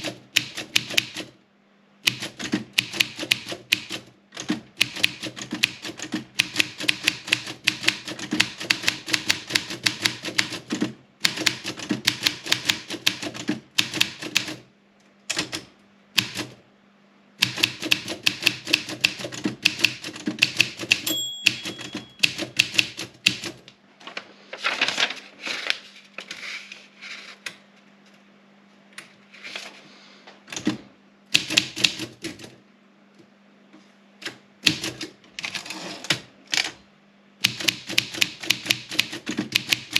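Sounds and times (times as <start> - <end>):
typewriter keystrokes: 0.0 - 1.3, 2.0 - 14.6, 15.3 - 16.6, 17.4 - 23.7, 30.5 - 32.5, 34.2 - 36.8, 37.4 - 39.9
typewriter bell ring: 21.0 - 22.4.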